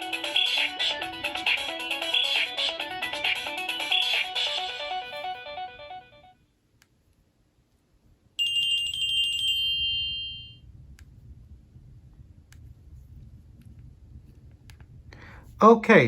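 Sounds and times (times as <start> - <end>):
phone alert chime with trill: 8.4 - 10.6.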